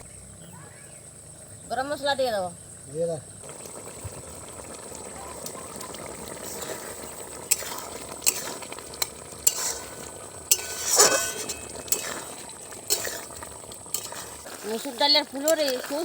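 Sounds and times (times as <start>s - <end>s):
curry simmering in a pot: 3.2s - 16.0s
metal ladle scraping a pot: 6.2s - 16.0s.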